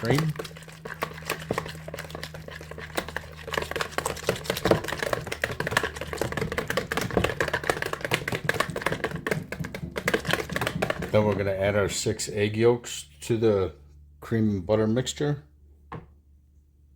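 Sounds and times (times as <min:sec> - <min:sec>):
whisk clicking against bowl: 0:00.0 - 0:11.5
steady low hum: 0:00.0 - 0:16.9.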